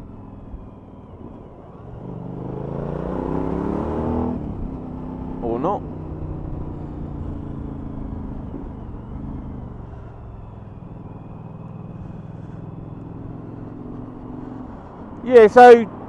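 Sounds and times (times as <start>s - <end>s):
motorcycle engine running: 4.5s - 16.0s.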